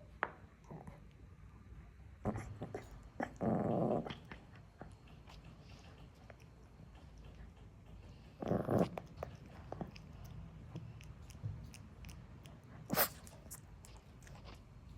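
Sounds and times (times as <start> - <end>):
dog grumbling: 2.2 - 4.6, 8.4 - 10.0
dog chewing mouth sounds: 2.3 - 14.9.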